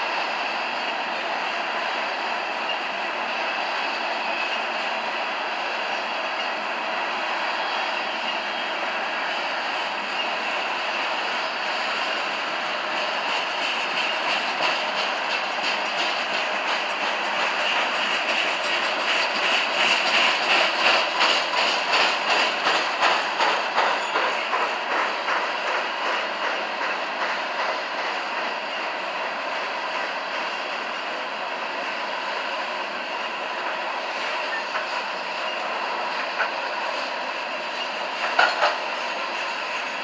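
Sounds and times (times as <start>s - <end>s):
train rolling noise: 0.0s - 40.0s
train wheels clicking on rail joints: 0.1s - 40.0s.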